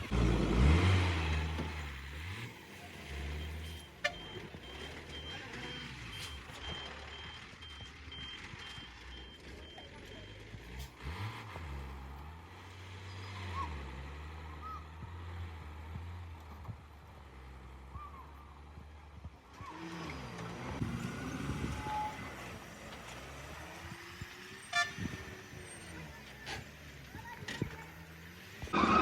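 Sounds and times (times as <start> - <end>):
heavy truck engine revving: 0.0 - 18.0, 18.6 - 29.0
horn toot: 24.6 - 25.6.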